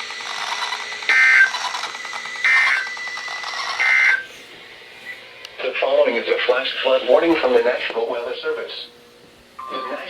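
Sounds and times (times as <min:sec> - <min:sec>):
warbling data tone bursts: 0:00.2 - 0:04.3.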